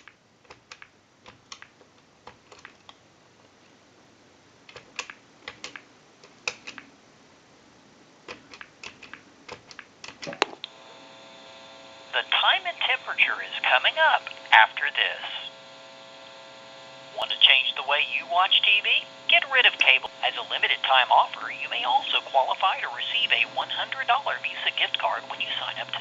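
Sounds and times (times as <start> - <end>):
telephone line hum: 10.6 - 26.0.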